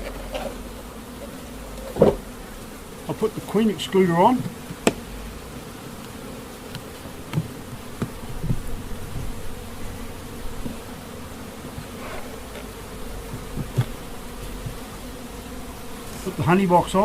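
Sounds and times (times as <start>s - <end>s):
light knocks of hive parts: 0.0s - 9.7s, 10.4s - 11.0s, 11.6s - 17.0s
honeybees buzzing: 0.0s - 17.0s.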